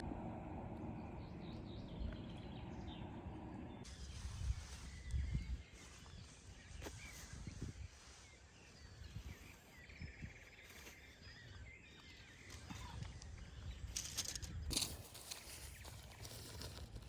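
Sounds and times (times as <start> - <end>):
low rumble: 0.0 - 5.7
birds chirping: 0.0 - 17.0.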